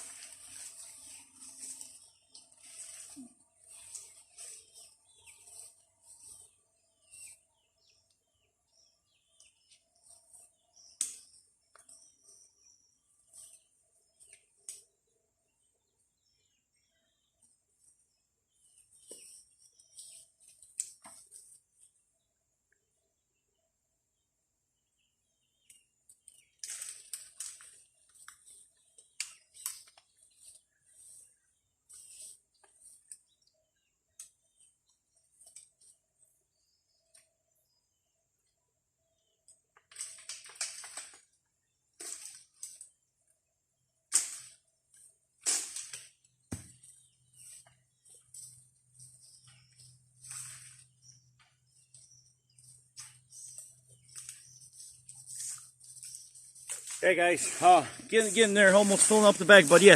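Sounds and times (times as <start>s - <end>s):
leaves and twigs rustling: 0.0s - 7.4s, 26.2s - 33.3s, 39.9s - 41.4s, 42.0s - 43.0s, 44.1s - 59.9s.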